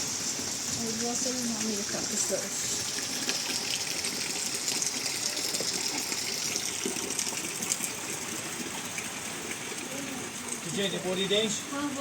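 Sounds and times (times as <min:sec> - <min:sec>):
heavy rain: 0:08.2 - 0:12.0.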